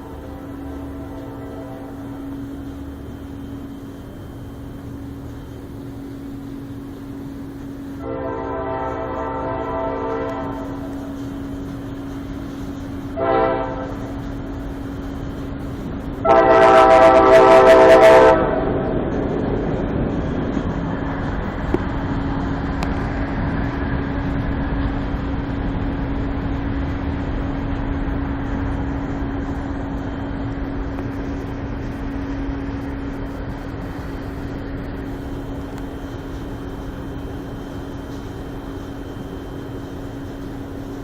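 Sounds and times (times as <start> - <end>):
train horn chord: 0.0 - 2.6, 8.0 - 11.4, 13.1 - 14.3, 16.2 - 19.0
rumbling background: 0.0 - 41.0
steady low hum: 0.0 - 41.0.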